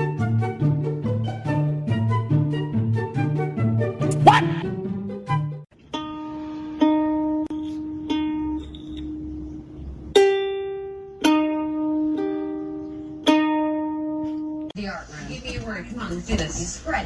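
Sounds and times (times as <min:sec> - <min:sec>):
slow plucked string melody: 0:04.0 - 0:14.7.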